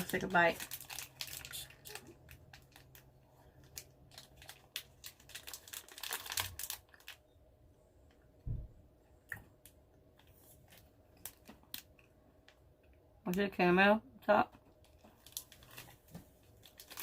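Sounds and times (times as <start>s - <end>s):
plastic wrapper crinkling: 0.0s - 7.3s, 9.6s - 12.6s, 14.8s - 17.0s.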